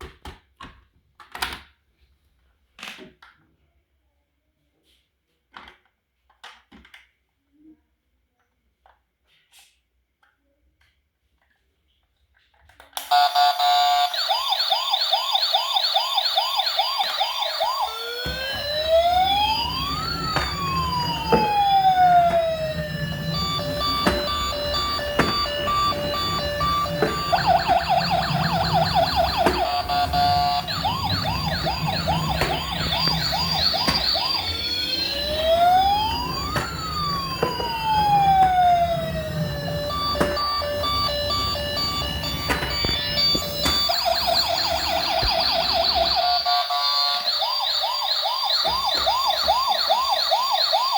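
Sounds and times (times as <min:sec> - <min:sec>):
electronic sirens: 0:13.0 - 0:50.9.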